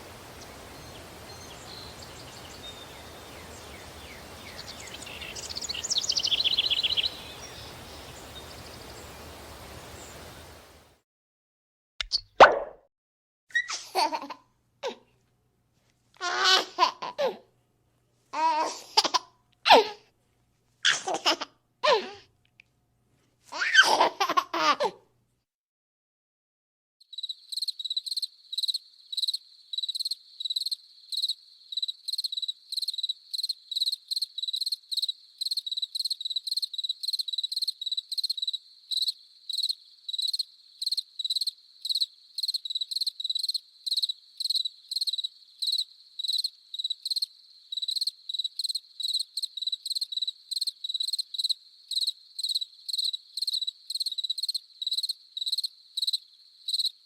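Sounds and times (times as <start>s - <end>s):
cricket chirping close up: 0.0s - 10.6s, 27.0s - 57.0s
faint chorus of crickets: 0.0s - 11.0s, 27.0s - 57.0s.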